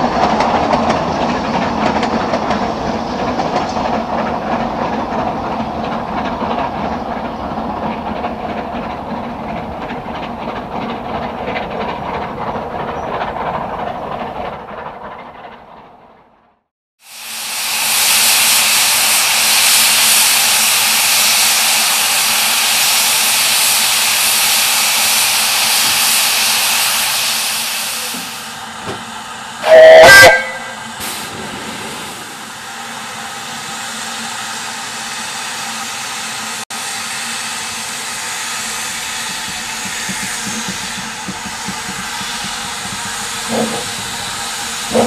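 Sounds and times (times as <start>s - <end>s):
steam locomotive hissing: 17.0s - 45.0s
steam whistle blast: 29.6s - 30.9s.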